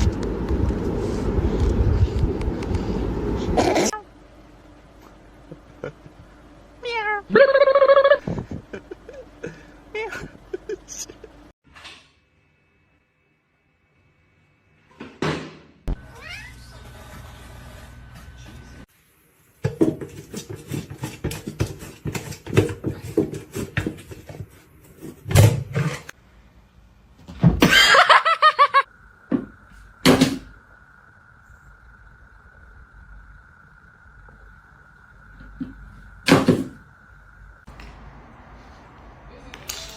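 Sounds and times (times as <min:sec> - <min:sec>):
cat meowing loudly: 0:06.8 - 0:07.4, 0:16.0 - 0:16.7.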